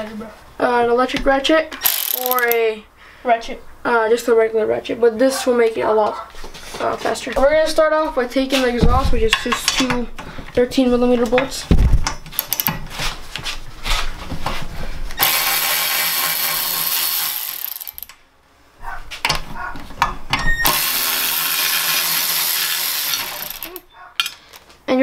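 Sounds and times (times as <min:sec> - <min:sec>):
electric ratchet spinning bolts: 0:01.8 - 0:02.6, 0:12.3 - 0:12.8, 0:15.2 - 0:18.2, 0:20.6 - 0:24.3.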